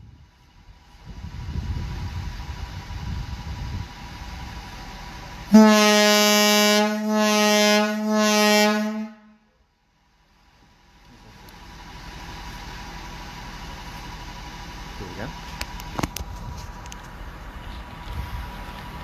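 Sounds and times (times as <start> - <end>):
low rumbling noise: 0.0 - 8.2
air horn blast: 5.5 - 9.5.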